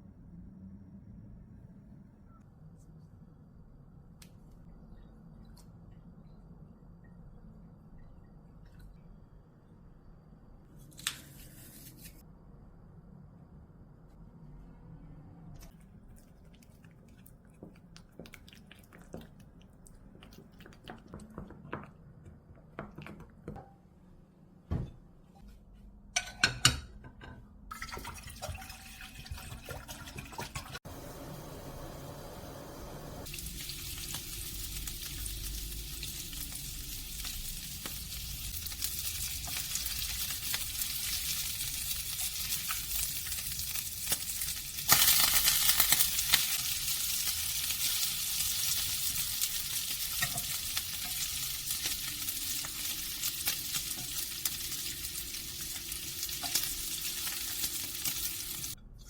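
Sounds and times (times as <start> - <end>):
kitchen knocks and clicks: 26.1 - 27.5
liquid being poured: 27.7 - 30.8
stew sizzling in a pan: 30.8 - 58.8.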